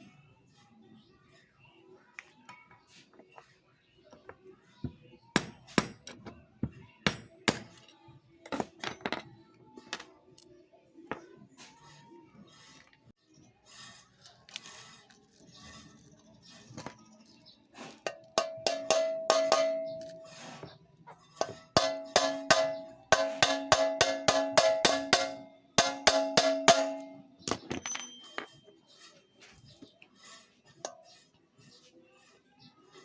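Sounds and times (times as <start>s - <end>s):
hammer striking metal tool: 5.4s - 6.3s, 7.0s - 7.8s, 18.1s - 20.6s, 21.4s - 28.8s.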